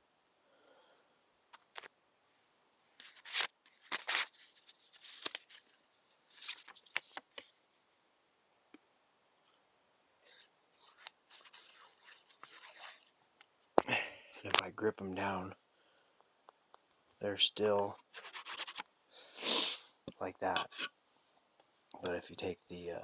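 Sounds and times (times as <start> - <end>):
paper rustling: 3.0 - 7.8, 10.3 - 13.2, 18.1 - 18.8.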